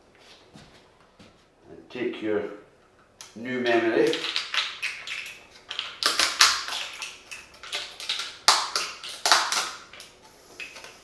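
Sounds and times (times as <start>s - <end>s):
plastic packaging clicks and crackles: 4.0s - 11.0s.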